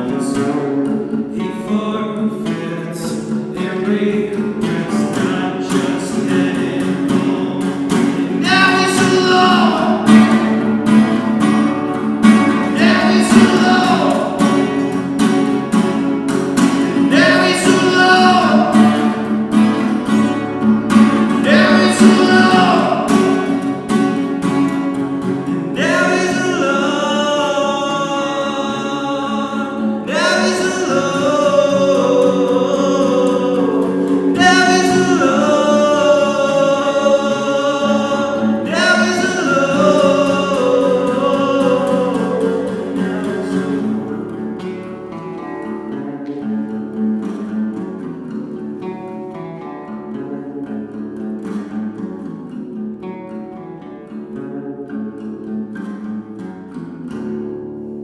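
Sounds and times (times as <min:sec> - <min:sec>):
person singing: 0:00.0 - 0:45.2
acoustic guitar strumming chords: 0:00.0 - 0:58.0.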